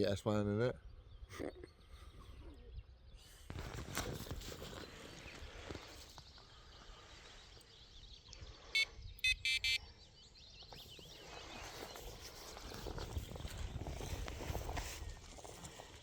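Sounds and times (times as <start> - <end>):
faint birdsong: 0.0 - 16.0
bite alarm beeping: 8.8 - 9.8.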